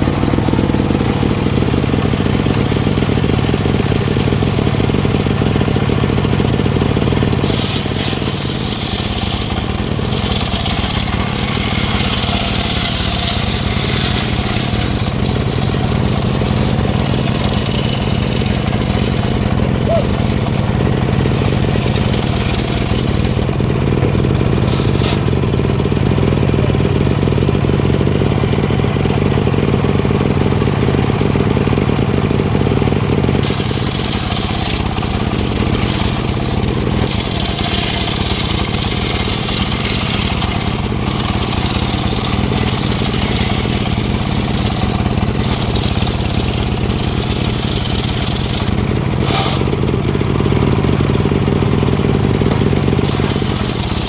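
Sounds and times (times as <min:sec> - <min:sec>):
saw engine running: 0:00.0 - 0:54.0
saw blade cutting timber hiss: 0:07.1 - 0:23.6, 0:24.5 - 0:25.4, 0:33.4 - 0:49.9, 0:53.0 - 0:54.0.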